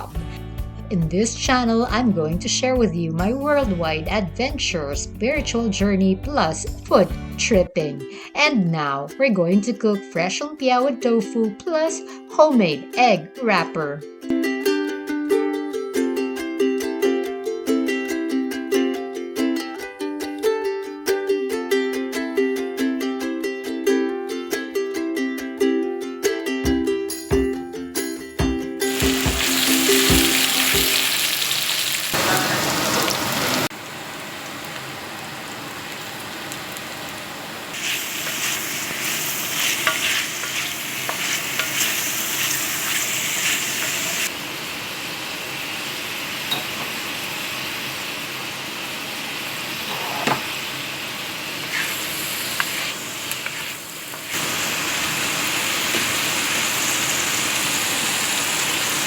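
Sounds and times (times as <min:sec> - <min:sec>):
food sizzling in a pan: 0:28.8 - 0:59.0.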